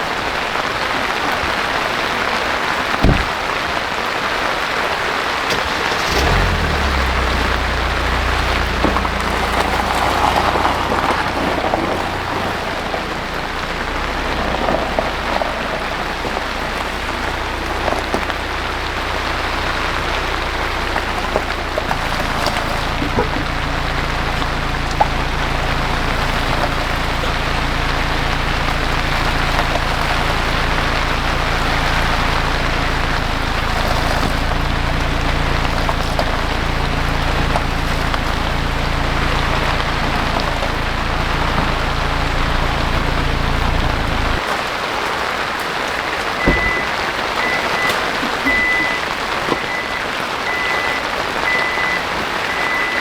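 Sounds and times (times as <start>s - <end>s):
car engine idling: 0.0s - 53.0s
steady rain falling: 0.0s - 53.0s
thump: 3.0s - 3.4s, 46.4s - 46.9s
high electronic beeps: 46.4s - 53.0s.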